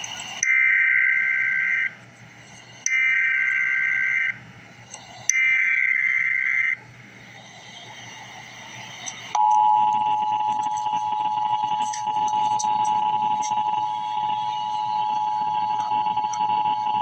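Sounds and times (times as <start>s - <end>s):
bursts of digital data tones: 5.0s - 17.0s.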